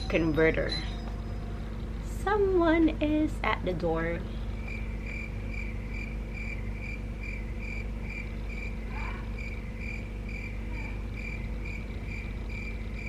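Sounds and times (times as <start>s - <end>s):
low background hum: 0.0s - 13.0s
cricket chirping: 4.5s - 13.0s.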